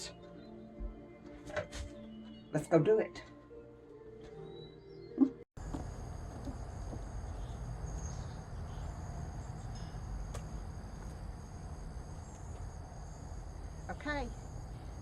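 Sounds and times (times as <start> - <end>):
insects trilling: 5.6 - 15.0.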